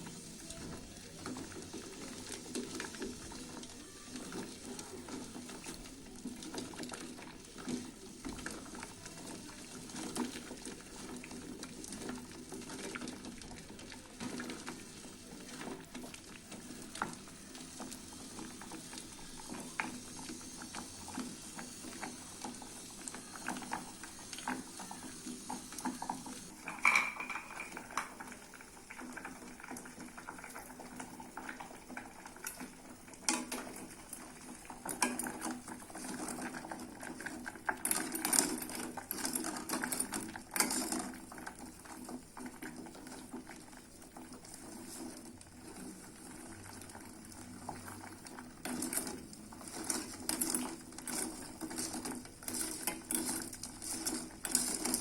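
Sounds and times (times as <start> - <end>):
metal utensils clinking on cookware: 26.6 - 28.3.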